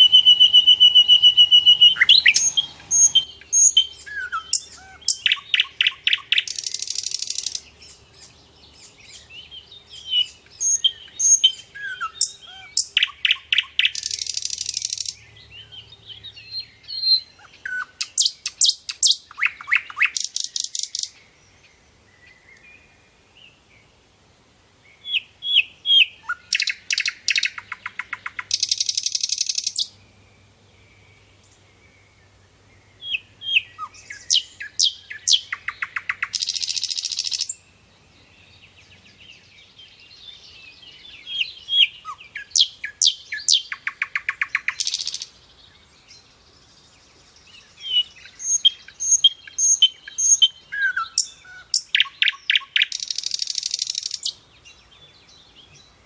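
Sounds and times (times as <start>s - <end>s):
nightingale singing: 0.0s - 23.9s, 24.8s - 56.0s.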